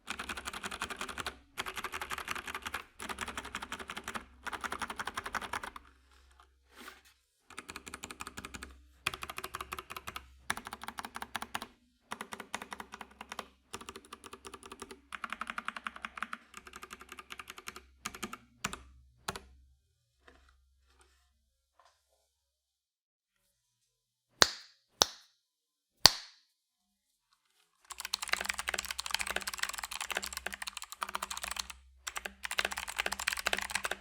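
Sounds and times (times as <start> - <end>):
mechanical keyboard typing: 0.1 - 5.8, 7.5 - 19.5, 27.9 - 34.0.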